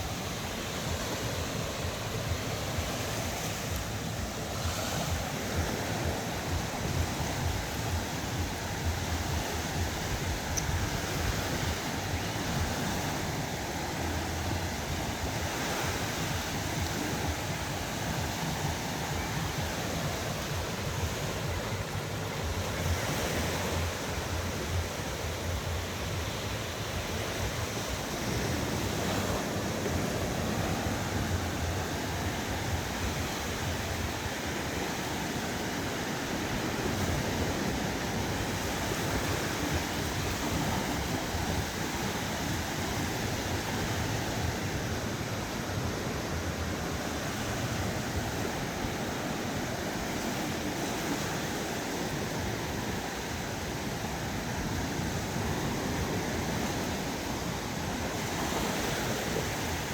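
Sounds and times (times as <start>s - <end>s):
waves washing onto beach: 0.0s - 59.9s
wind rumbling on microphone: 0.0s - 59.9s.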